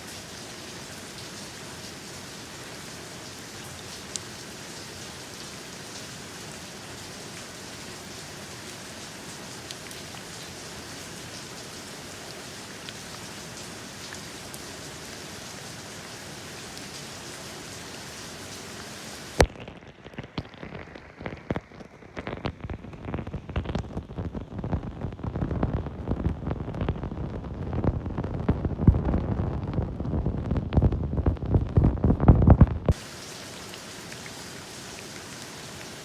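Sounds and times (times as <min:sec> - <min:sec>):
steady rain hiss: 0:00.0 - 0:36.0
low rumble: 0:28.0 - 0:32.9.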